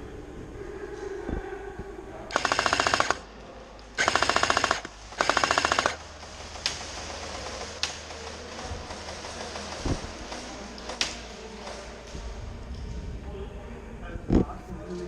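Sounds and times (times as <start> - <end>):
airsoft machine gun bursts: 2.3 - 3.3, 4.0 - 10.4.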